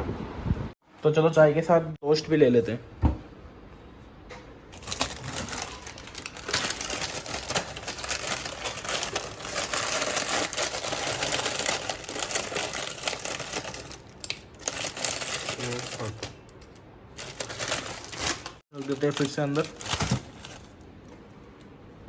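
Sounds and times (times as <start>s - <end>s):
plastic packet crinkling: 4.8s - 20.8s.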